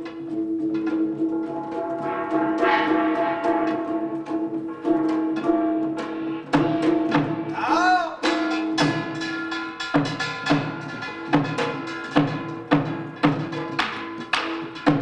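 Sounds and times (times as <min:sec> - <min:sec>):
drum strokes: 0:00.0 - 0:15.0
metal gongs ringing: 0:01.1 - 0:07.5.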